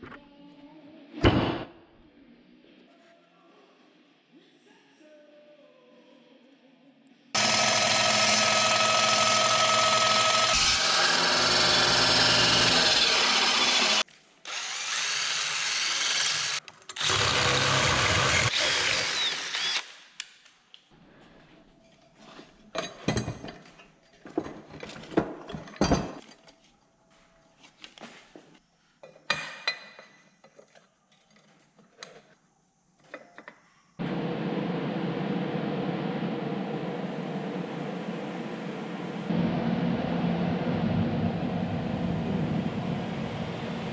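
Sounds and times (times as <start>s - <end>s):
power tool running: 7.4s - 19.9s.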